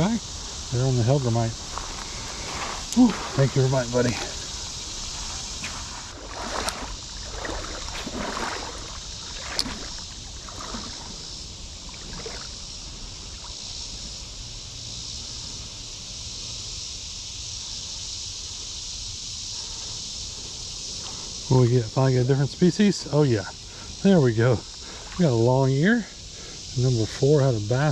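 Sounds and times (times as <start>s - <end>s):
creek water running: 0.0s - 15.5s, 20.2s - 27.9s
high insect drone: 0.0s - 27.9s
splashy rustles: 1.7s - 11.3s.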